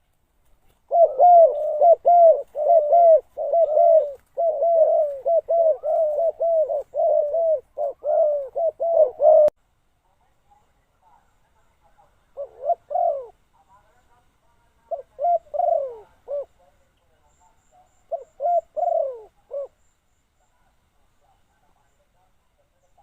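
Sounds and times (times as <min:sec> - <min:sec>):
dove cooing: 0:00.8 - 0:09.6, 0:12.2 - 0:14.0, 0:14.8 - 0:16.9, 0:18.0 - 0:19.8.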